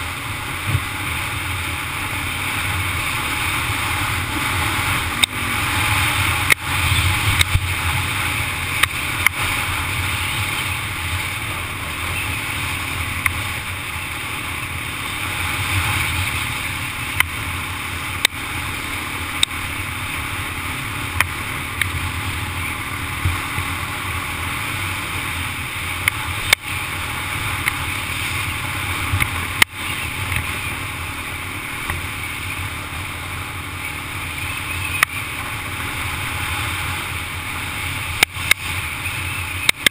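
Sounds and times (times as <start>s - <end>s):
atv engine running: 0.0s - 39.9s
wind noise: 0.0s - 39.9s.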